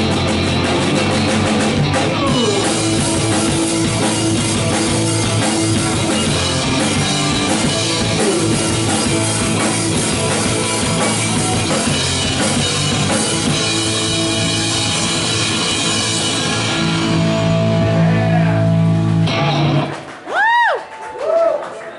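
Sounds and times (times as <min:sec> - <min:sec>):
drum kit pounding: 0:00.0 - 0:20.1
rock band playing: 0:00.0 - 0:20.6.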